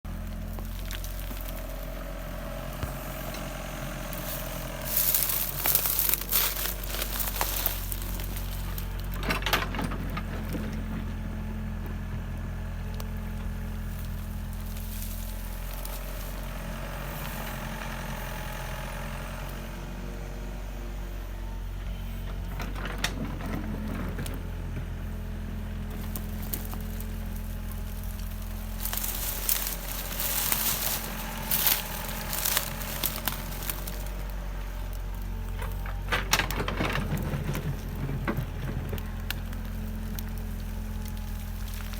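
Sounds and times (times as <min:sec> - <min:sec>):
machine humming: 0:00.8 - 0:09.2, 0:25.0 - 0:41.9
crackling scraping noise: 0:02.8 - 0:09.2, 0:25.9 - 0:35.8.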